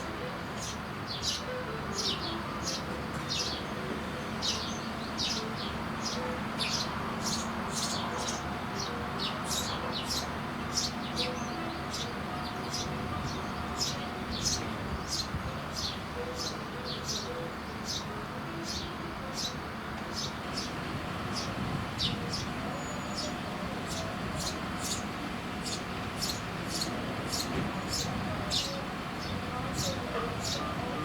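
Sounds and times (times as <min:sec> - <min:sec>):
sparrows chirping: 0:00.0 - 0:31.0.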